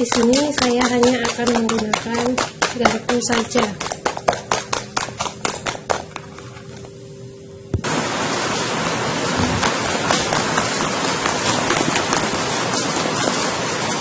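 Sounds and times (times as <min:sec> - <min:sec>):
steady rain-like hiss: 0:07.2 - 0:14.0.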